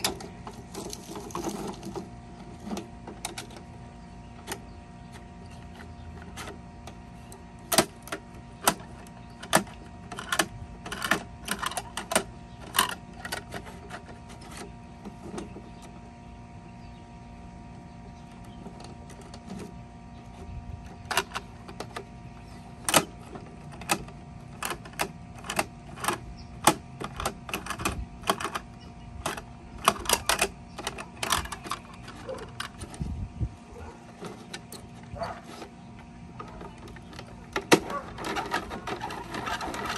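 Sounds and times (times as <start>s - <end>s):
plastic toys clattering: 0.0s - 3.7s, 7.7s - 15.6s, 20.9s - 22.1s, 22.8s - 33.1s, 34.1s - 39.9s
steady hum: 0.0s - 39.9s.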